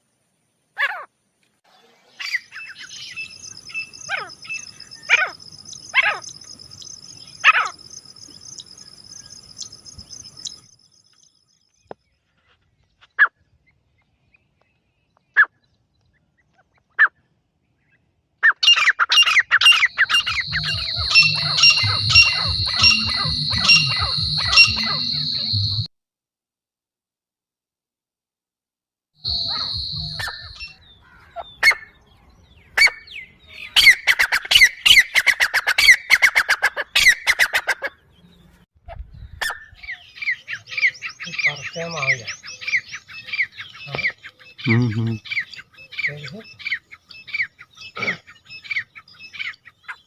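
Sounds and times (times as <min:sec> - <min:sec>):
francolin calls: 0:02.1 - 0:11.4, 0:18.6 - 0:25.9, 0:29.2 - 0:31.7, 0:39.8 - 0:50.0
steady high whine: 0:19.8 - 0:25.9, 0:29.3 - 0:30.8.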